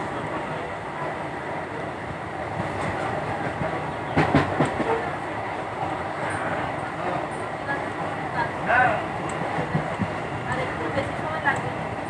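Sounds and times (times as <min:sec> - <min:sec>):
train rumbling on rails: 0:00.0 - 0:12.0
train wheels clacking: 0:02.8 - 0:05.1.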